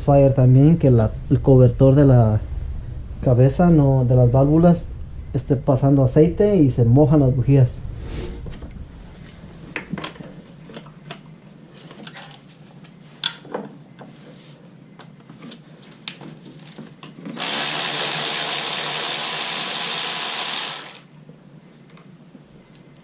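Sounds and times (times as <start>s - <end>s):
power ratchet running: 17.4s - 21.1s.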